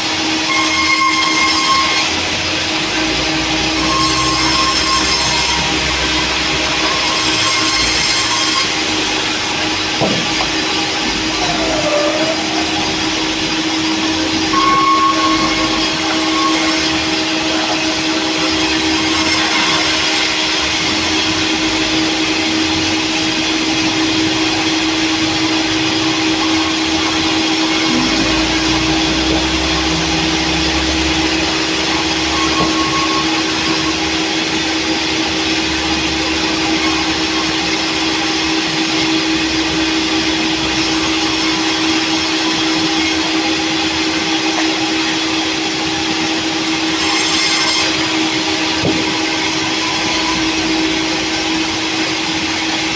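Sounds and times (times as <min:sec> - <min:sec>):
sawmill saw running: 0:00.0 - 0:52.9
deep rumble: 0:27.6 - 0:32.2.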